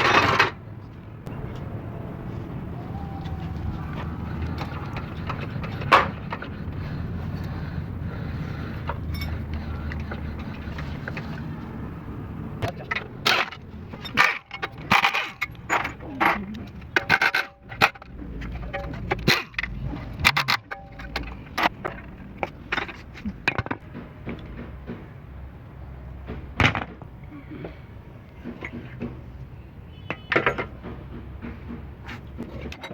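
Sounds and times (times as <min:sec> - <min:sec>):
metal tools clinking: 0:09.0 - 0:10.0.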